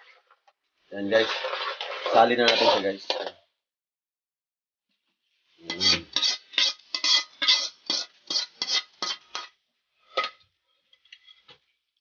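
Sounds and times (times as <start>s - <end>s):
metal utensil scraping a pan: 1.0s - 3.4s, 5.6s - 11.7s.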